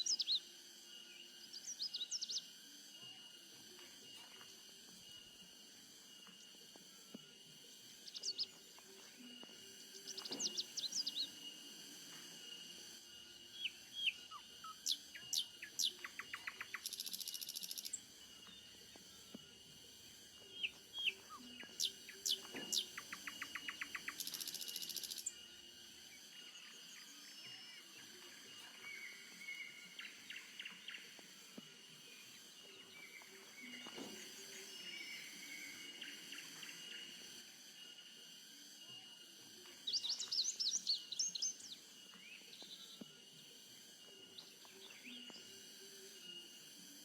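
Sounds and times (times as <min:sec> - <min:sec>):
high insect hum: 0:00.0 - 0:47.0
birds chirping and whistling: 0:13.5 - 0:18.8, 0:20.5 - 0:25.4.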